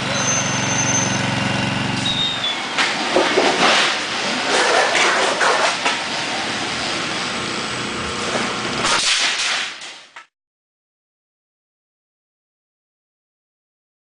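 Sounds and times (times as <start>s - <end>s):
roll former mechanical rattle: 0.0s - 10.2s.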